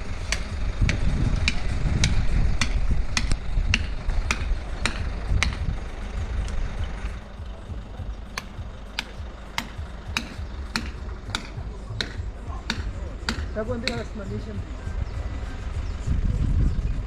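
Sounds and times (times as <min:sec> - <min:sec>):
low engine rumble: 0:00.0 - 0:17.0
hand hammer striking: 0:00.3 - 0:05.6, 0:08.3 - 0:14.2.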